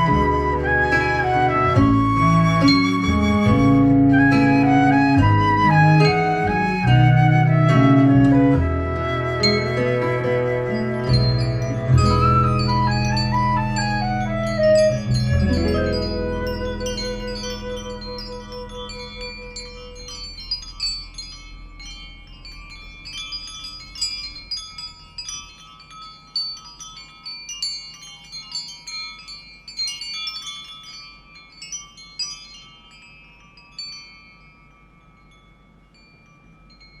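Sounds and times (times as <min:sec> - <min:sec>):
love song held low note: 0:00.0 - 0:26.2
wind chimes tinkling: 0:09.0 - 0:37.0.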